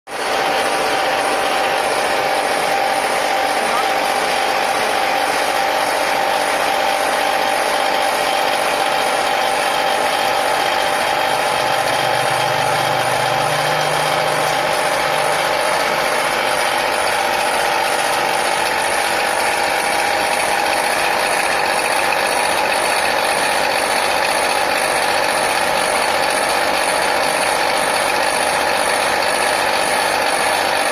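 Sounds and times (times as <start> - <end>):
meat grinder motor whine: 0.1 - 30.9
mechanical clatter of grinder: 0.1 - 30.9.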